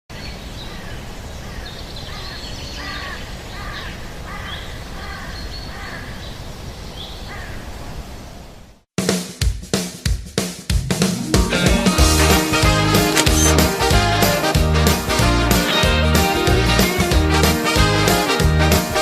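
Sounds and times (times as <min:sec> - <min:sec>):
birds calling: 0:00.1 - 0:07.6, 0:13.0 - 0:13.8.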